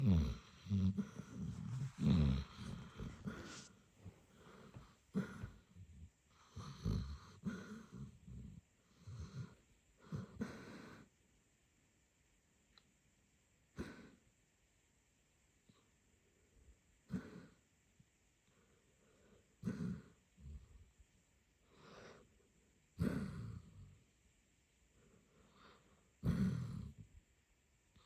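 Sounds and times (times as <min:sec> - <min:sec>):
dog snoring: 0:00.0 - 0:11.1, 0:13.8 - 0:14.2, 0:17.1 - 0:17.6, 0:19.0 - 0:20.8, 0:23.0 - 0:24.0, 0:25.0 - 0:27.1.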